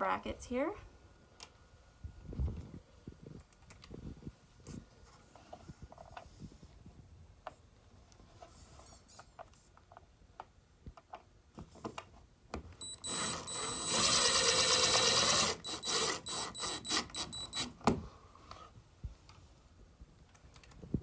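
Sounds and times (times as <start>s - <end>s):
drill handling clicks: 12.8s - 17.7s
power drill whining: 12.8s - 17.7s.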